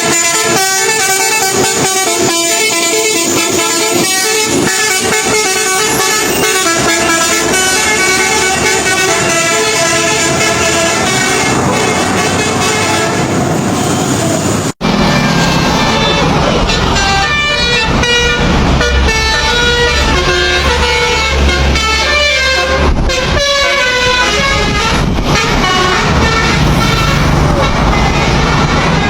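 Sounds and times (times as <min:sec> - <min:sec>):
musical truck horn tune: 0:00.0 - 0:29.0
truck engine rumble: 0:00.0 - 0:29.0.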